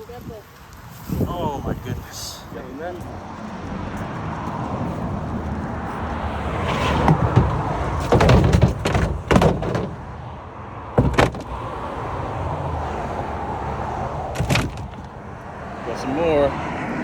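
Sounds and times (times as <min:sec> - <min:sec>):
sharp bangs and knocks: 0:06.7 - 0:10.2, 0:11.0 - 0:11.8, 0:14.3 - 0:15.4.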